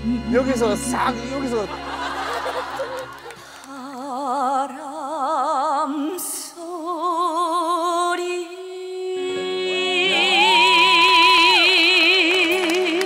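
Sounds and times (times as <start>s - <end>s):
band accompaniment: 0.0s - 3.6s
woman singing long note: 8.3s - 13.0s.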